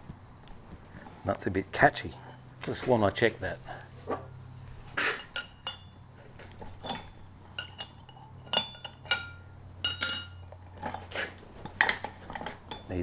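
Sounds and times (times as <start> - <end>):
metal hardware clinking: 5.2 - 13.0.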